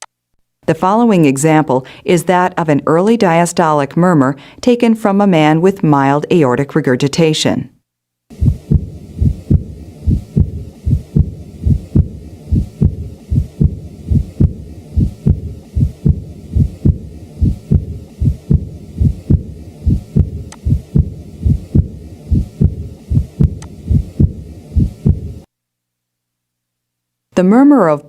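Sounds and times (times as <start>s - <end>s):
blowing heart murmur: 8.3s - 25.5s
heartbeat through stethoscope: 8.3s - 25.5s.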